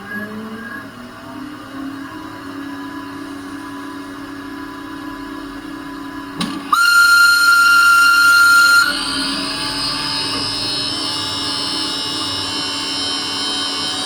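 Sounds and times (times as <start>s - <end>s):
model locomotive hum: 6.4s - 14.0s
high warning whistle: 6.7s - 14.0s.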